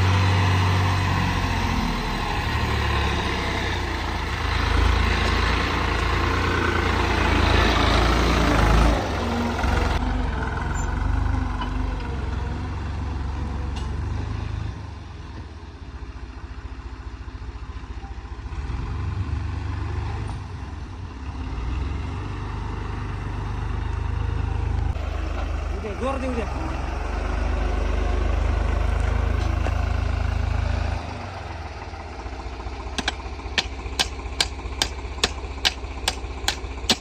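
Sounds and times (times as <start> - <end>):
heavy machinery diesel engine running: 0.0 - 17.6, 20.8 - 37.0.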